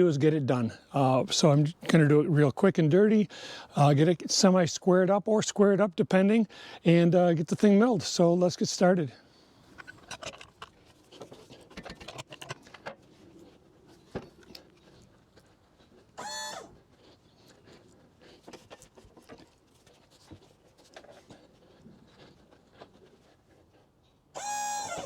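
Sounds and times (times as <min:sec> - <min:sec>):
short high-pitched squeak: 0:24.4 - 0:25.0.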